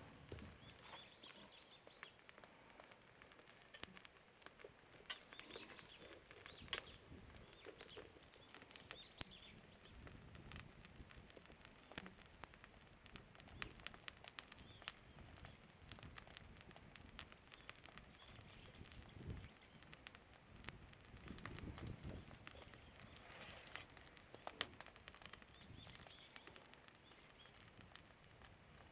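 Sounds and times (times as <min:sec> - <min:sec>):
birds chirping: 0:00.0 - 0:03.0, 0:04.7 - 0:10.1, 0:14.5 - 0:16.0, 0:17.3 - 0:20.0, 0:22.0 - 0:24.6, 0:25.2 - 0:27.6
wood fire crackling and popping: 0:00.0 - 0:28.9.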